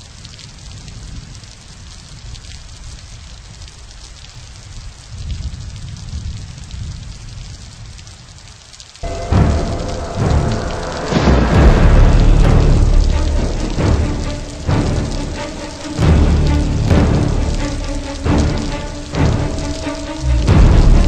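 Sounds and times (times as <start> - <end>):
rain falling: 0.0 - 21.0
loud music: 9.0 - 21.0
low rumble: 9.0 - 21.0.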